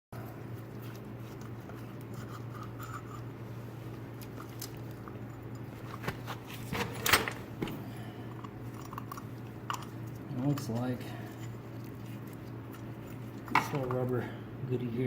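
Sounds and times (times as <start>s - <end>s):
low electrical hum: 0.2s - 15.0s
tools clattering: 6.0s - 7.8s.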